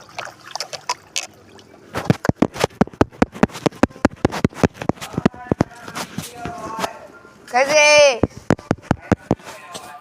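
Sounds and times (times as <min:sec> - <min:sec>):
fast sharp knocks: 0:02.0 - 0:05.7, 0:08.2 - 0:09.4.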